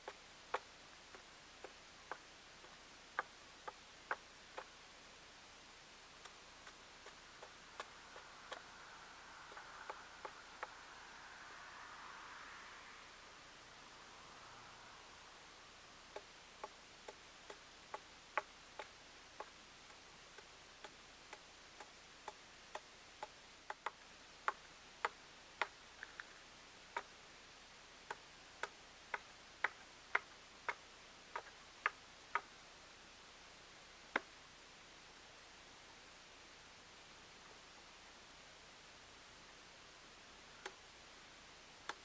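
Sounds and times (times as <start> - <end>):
faint steady hiss: 0.0 - 42.0
sharp ticks: 6.2 - 8.7, 9.5 - 10.8, 16.1 - 25.8, 28.1 - 32.5.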